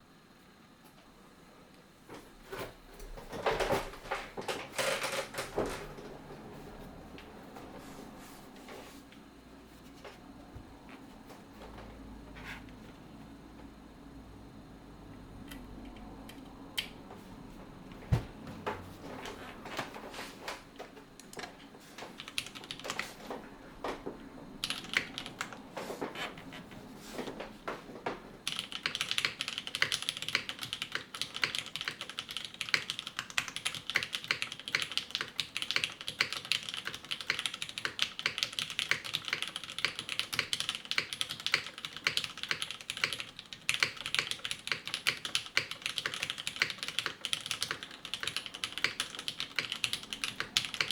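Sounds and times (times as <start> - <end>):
mechanical keyboard typing: 22.2 - 23.2, 24.6 - 25.6, 28.4 - 50.9.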